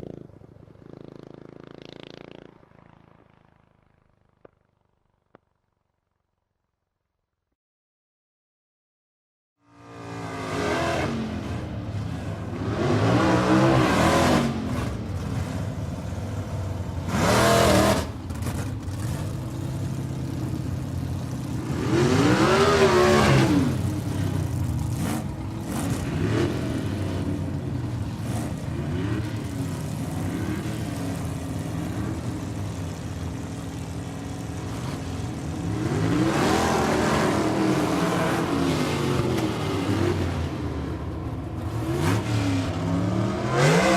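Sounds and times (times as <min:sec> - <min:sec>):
motorcycle engine idling and revving: 0:00.0 - 0:06.6, 0:09.6 - 0:43.9.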